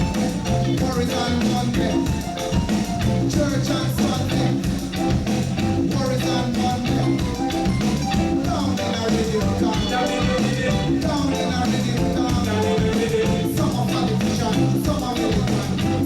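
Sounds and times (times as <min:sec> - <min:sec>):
bass notes: 0:00.0 - 0:16.0
drum kit beat: 0:00.0 - 0:16.0
reggae band playing: 0:00.0 - 0:16.0.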